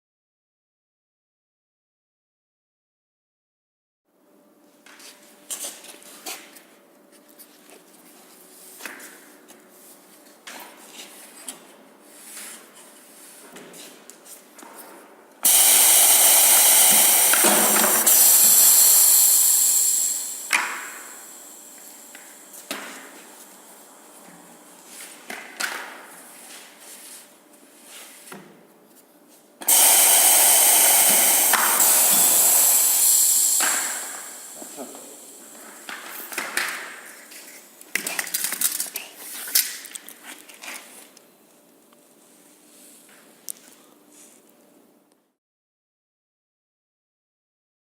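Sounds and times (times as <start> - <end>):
cutting machine hissing: 15.4 - 23.1, 29.7 - 36.3.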